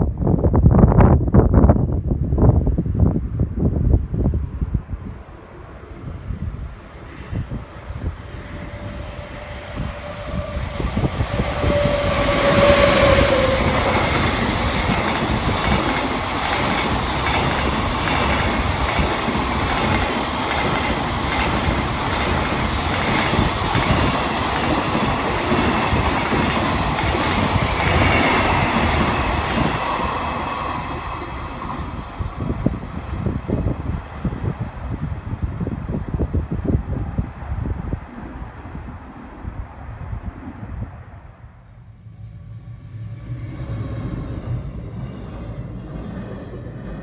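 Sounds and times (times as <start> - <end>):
locomotive whine: 5.0 - 33.9, 40.2 - 47.0.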